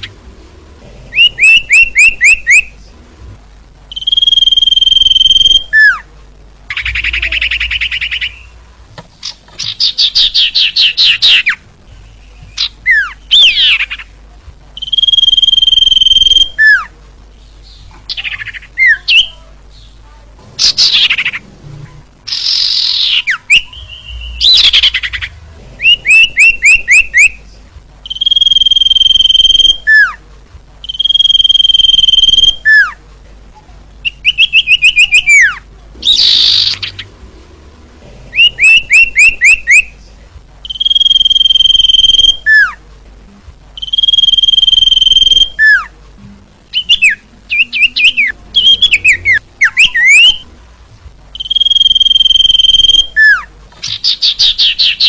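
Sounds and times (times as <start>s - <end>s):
harsh raspy bird notes: 1.0s - 2.8s, 3.9s - 6.1s, 6.7s - 8.6s, 14.8s - 16.9s, 22.3s - 27.4s, 28.0s - 30.2s, 30.8s - 33.0s, 34.0s - 40.0s, 40.6s - 42.8s, 43.8s - 45.9s, 46.7s - 50.5s, 51.3s - 55.0s
bird whistling song: 1.1s - 2.7s, 3.9s - 6.0s, 6.7s - 8.6s, 9.2s - 14.1s, 14.8s - 16.9s, 22.3s - 27.4s, 28.0s - 30.2s, 30.8s - 33.0s, 34.0s - 37.1s, 38.3s - 39.9s, 40.6s - 42.8s, 43.8s - 45.9s, 46.7s - 50.4s, 51.3s - 55.0s.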